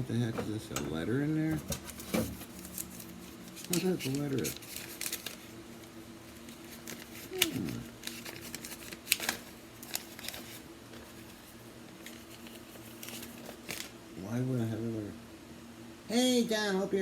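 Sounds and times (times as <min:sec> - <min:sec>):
faint steady hum: 0:00.0 - 0:17.0
paper rustling and crinkling: 0:01.5 - 0:14.0.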